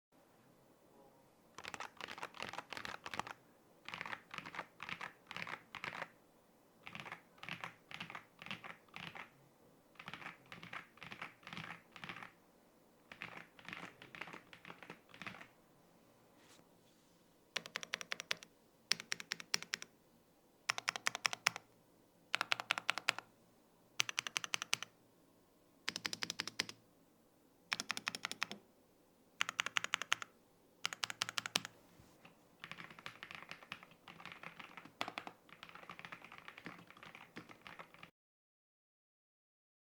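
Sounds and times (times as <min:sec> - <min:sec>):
mechanical keyboard typing: 0:01.6 - 0:06.1, 0:06.8 - 0:09.3, 0:10.0 - 0:12.4, 0:13.1 - 0:15.5, 0:17.6 - 0:19.9, 0:20.7 - 0:21.7, 0:22.3 - 0:23.3, 0:24.0 - 0:24.9, 0:25.9 - 0:26.8, 0:27.7 - 0:28.6, 0:29.4 - 0:31.8, 0:32.6 - 0:38.1.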